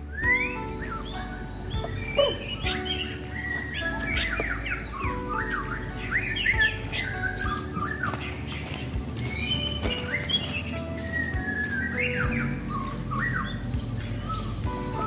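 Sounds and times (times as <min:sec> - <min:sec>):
bird singing whistled phrases: 0:00.1 - 0:08.7, 0:09.3 - 0:15.0.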